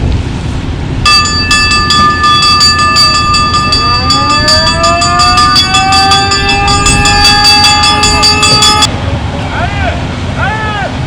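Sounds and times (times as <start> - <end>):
alarm bell ringing: 1.1 - 8.9
siren winding up: 1.1 - 8.9.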